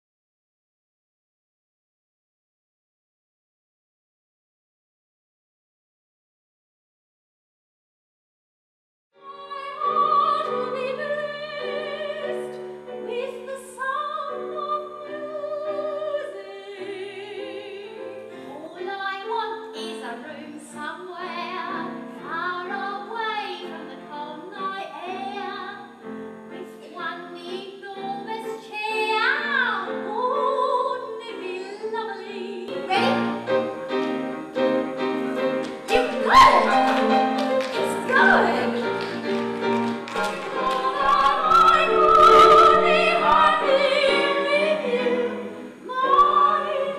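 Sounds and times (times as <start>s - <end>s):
piano accompaniment: 9.2s - 46.9s
woman singing operatically: 35.9s - 37.1s.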